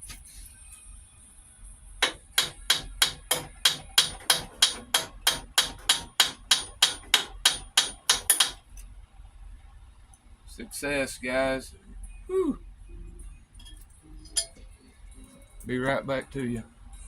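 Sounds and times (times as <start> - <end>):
hammer striking a wrench: 2.0 - 8.6.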